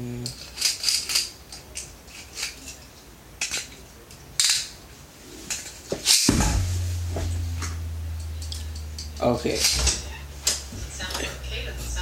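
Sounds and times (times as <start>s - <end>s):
spinning top humming: 6.3s - 12.0s.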